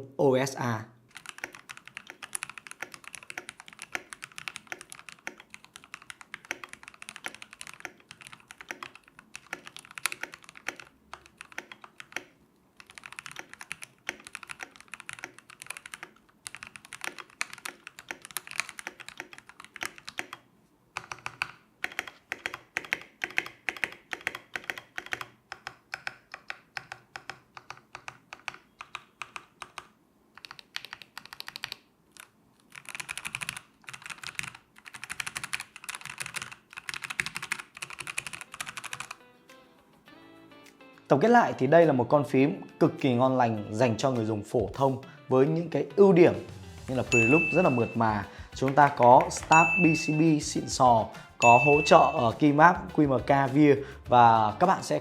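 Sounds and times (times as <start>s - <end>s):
mechanical keyboard typing: 1.1s - 39.2s, 47.1s - 50.8s, 51.4s - 52.6s.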